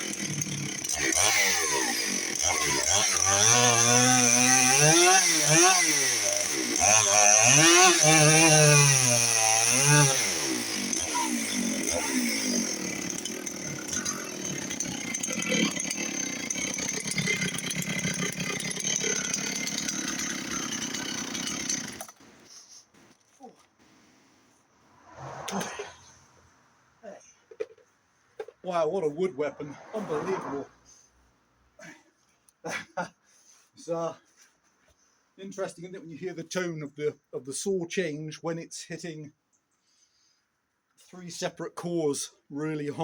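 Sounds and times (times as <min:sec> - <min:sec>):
chainsaw running: 0:00.0 - 0:23.2.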